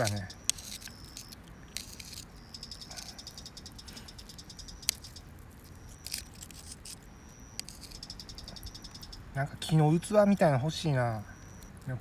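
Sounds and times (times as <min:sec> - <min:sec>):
sharp clicks: 0:00.0 - 0:05.3
insects chirping in rapid trills: 0:00.0 - 0:12.0.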